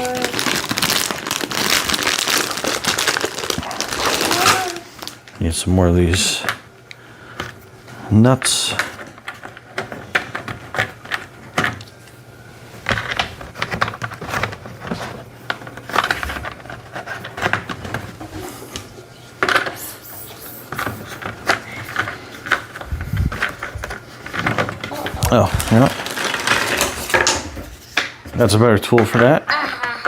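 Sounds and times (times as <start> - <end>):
small plastic parts rattling: 0.0 - 5.4, 8.3 - 12.0, 12.8 - 18.7, 19.4 - 27.7.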